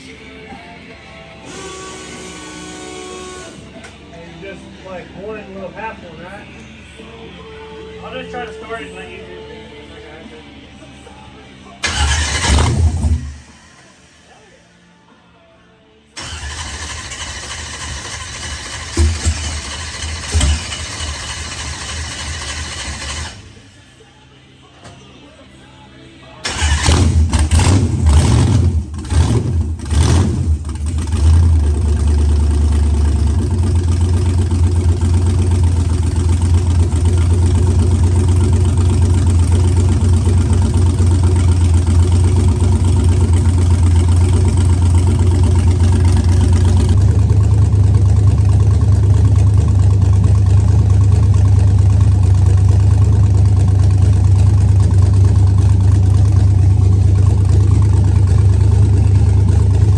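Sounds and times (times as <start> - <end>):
truck engine starting and revving: 11.8 - 14.4, 16.2 - 23.8, 26.4 - 59.9.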